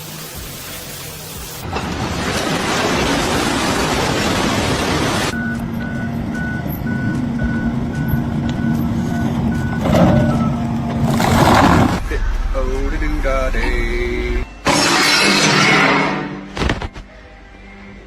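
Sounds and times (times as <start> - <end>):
engine running: 5.0 - 14.4
reversing alarm beeping: 5.3 - 11.1.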